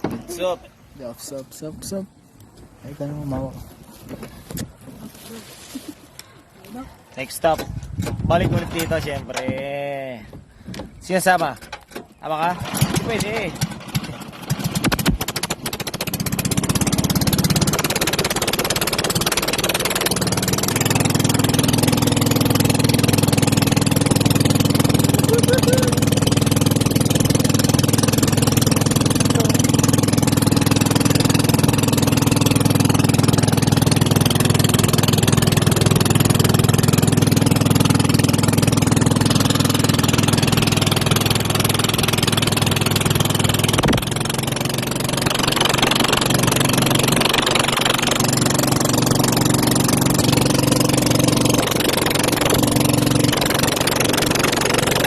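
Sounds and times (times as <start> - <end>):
vehicle engine running: 12.6 - 55.0.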